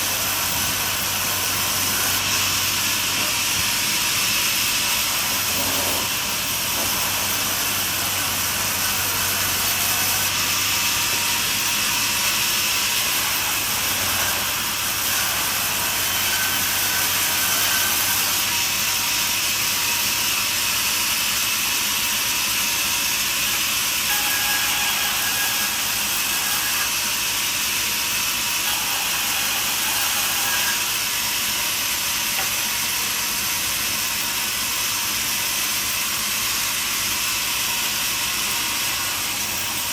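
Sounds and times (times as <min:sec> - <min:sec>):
band sawmill cutting: 0:00.0 - 0:39.9.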